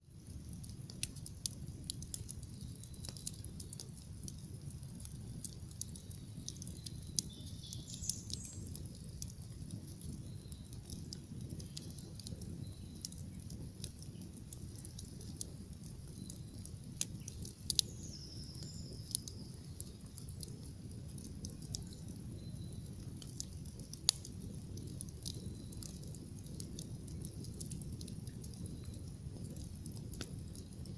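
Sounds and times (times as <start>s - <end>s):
bonfire crackling and popping: 0.0s - 30.9s
birds chirping: 6.4s - 8.7s, 17.2s - 19.9s.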